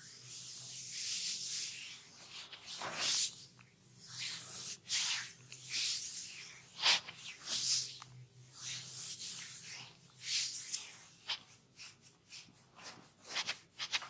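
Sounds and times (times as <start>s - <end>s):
hands rubbing and sliding over skin: 0.3s - 14.0s.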